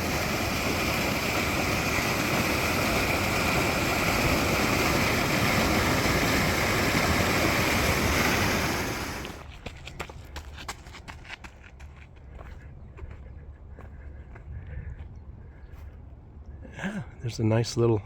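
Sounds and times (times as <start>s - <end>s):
canal water rushing: 0.0s - 9.4s
footsteps: 9.2s - 15.1s.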